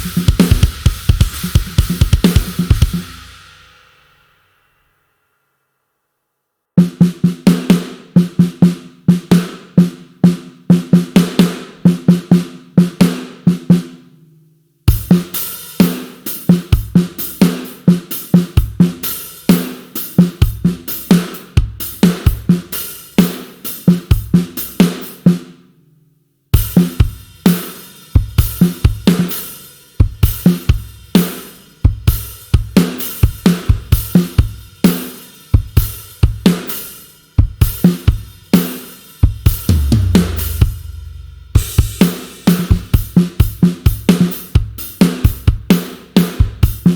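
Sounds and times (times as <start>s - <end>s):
pitched drum hits: 0.0s - 3.3s, 39.6s - 42.9s
rock drum kit grooves: 0.0s - 3.8s, 6.8s - 14.1s, 14.9s - 25.6s, 26.6s - 46.9s.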